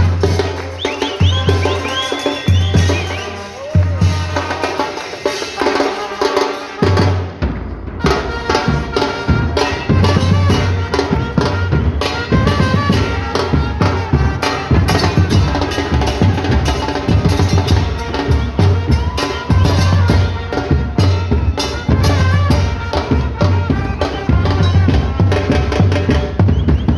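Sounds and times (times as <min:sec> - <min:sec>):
music with drums and bass: 0:00.0 - 0:26.9.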